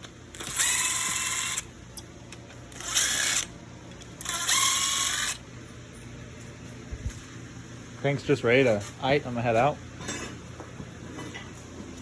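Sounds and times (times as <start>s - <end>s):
power tool motor whirring: 0.3s - 1.7s, 2.7s - 3.5s, 4.2s - 5.4s.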